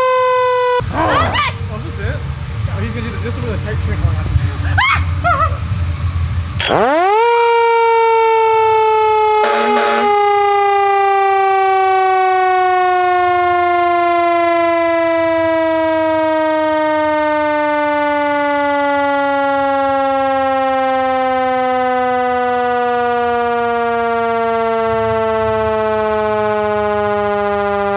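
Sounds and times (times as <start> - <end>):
siren winding up and down: 0.0 - 1.6, 6.6 - 27.9.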